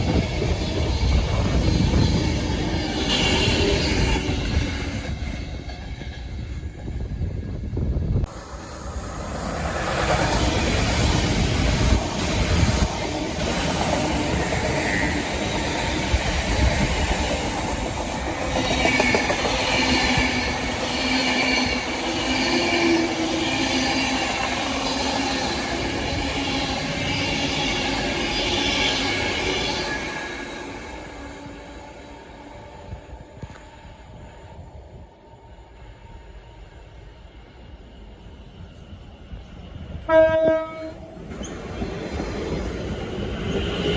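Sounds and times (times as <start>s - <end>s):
train wheels rumbling on rail: 0.0s - 43.9s.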